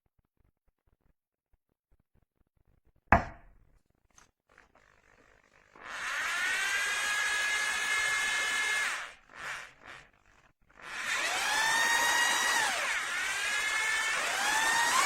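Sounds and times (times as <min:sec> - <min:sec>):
rotary hammer motor whining: 0:04.6 - 0:15.0.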